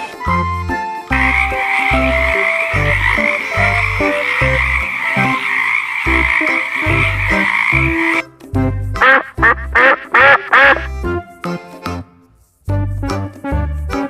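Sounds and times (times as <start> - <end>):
frogs calling in chorus: 1.1 - 8.3, 9.0 - 10.9
music with bass beat: 1.1 - 11.1.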